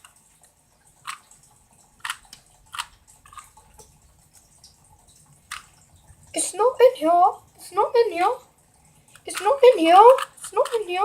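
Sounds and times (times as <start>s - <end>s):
puzzle cube clicking: 2.0s - 3.5s.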